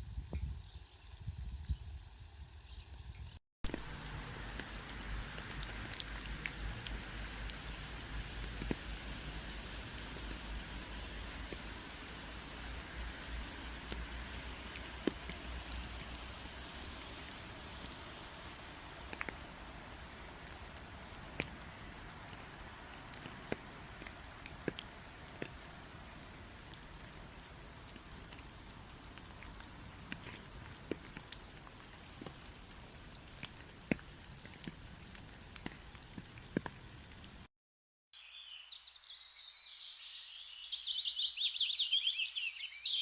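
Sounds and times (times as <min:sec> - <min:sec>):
rain falling: 0:03.7 - 0:37.5.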